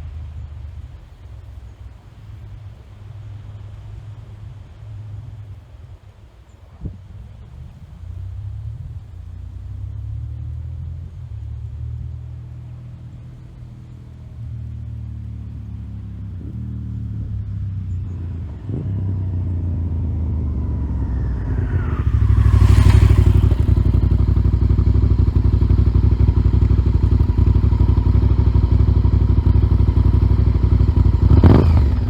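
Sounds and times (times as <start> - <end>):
motorcycle engine running: 14.4 - 32.0.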